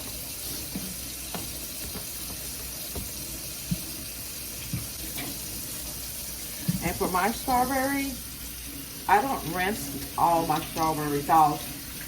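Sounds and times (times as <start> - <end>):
tap running into sink: 0.0 - 5.9, 6.6 - 7.0.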